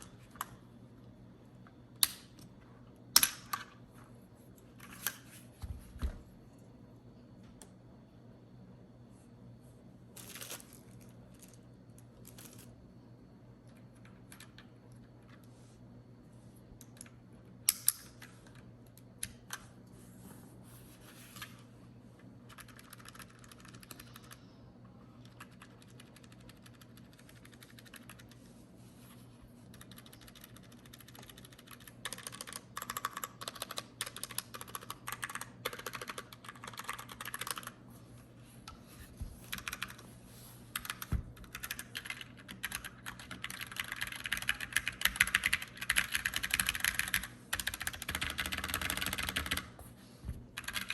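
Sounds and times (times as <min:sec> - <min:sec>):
mechanical keyboard typing: 0:22.5 - 0:24.4, 0:25.2 - 0:28.4, 0:29.7 - 0:37.8, 0:39.5 - 0:40.0, 0:40.8 - 0:49.7, 0:50.6 - 0:50.9.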